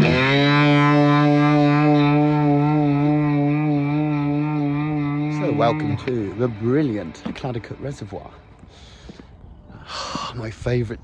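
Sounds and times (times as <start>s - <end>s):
distorted electric guitar note: 0.0s - 8.4s.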